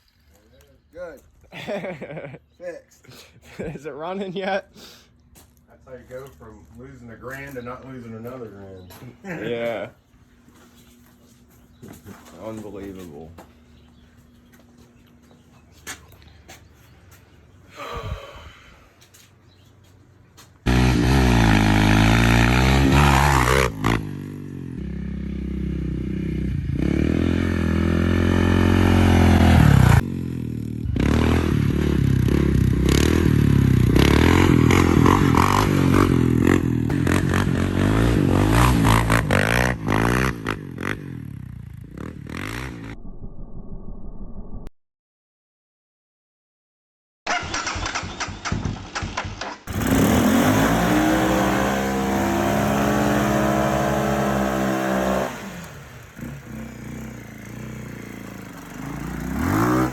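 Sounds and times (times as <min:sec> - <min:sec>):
atv engine revving: 0:20.6 - 0:43.0, 0:47.3 - 0:59.9.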